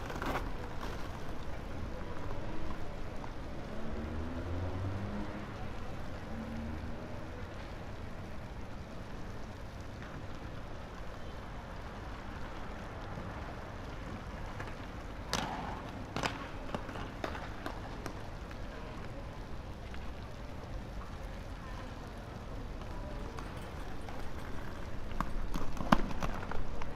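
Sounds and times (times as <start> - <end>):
skateboard clacks: 0.0 - 1.6, 14.4 - 19.2, 22.8 - 26.9
skateboard wheels rolling on concrete: 0.0 - 26.9.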